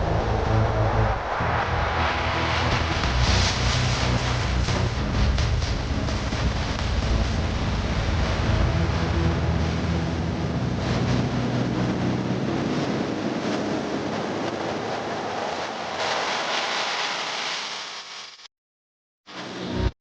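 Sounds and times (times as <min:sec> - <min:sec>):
low hum: 0:00.0 - 0:15.0
steady rushing noise: 0:00.0 - 0:18.5.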